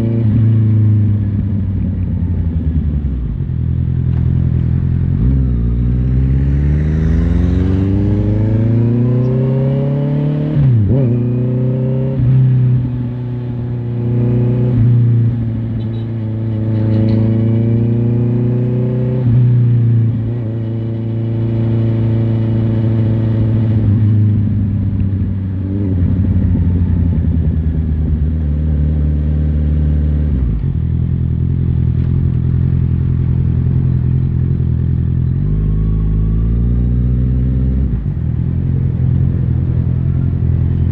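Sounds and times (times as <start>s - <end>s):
motorcycle engine revving through gears: 0.0s - 40.9s.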